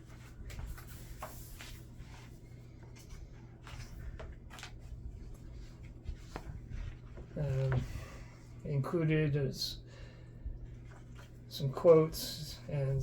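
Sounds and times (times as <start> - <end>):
book pages turning: 0.0 - 7.8, 10.7 - 11.4
low room hum: 0.0 - 13.0.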